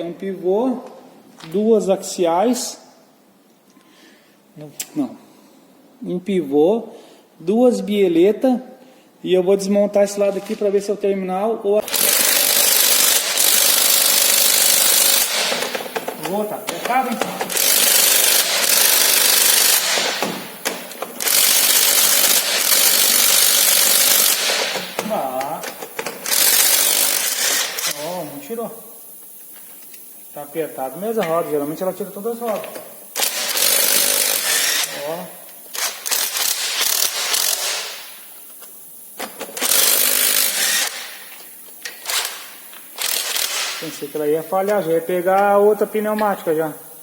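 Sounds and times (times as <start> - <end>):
pneumatic impact wrench hammering: 11.8 - 28.1, 32.5 - 44.0.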